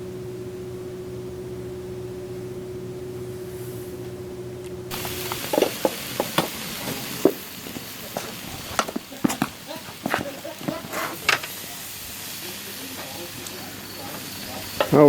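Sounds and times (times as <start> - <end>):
low hum with held tone: 0.0 - 10.0
food sizzling in a hot pan: 4.9 - 15.0.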